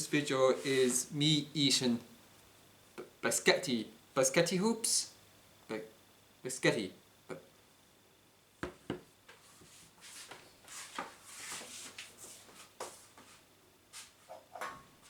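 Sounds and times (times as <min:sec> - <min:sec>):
soft rubbing and rustling: 0:00.5 - 0:01.2, 0:09.3 - 0:14.6.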